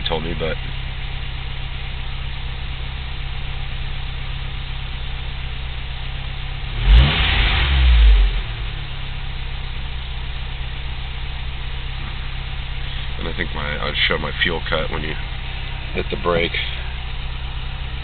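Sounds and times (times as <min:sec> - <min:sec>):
car engine idling: 0:00.0 - 0:18.0
engine revving: 0:06.6 - 0:09.3, 0:12.0 - 0:18.0.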